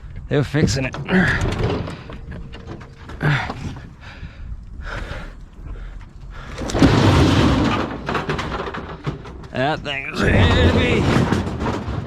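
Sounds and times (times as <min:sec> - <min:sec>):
metal clunks: 0:00.6 - 0:10.0
heavy metal scraping: 0:00.9 - 0:11.5.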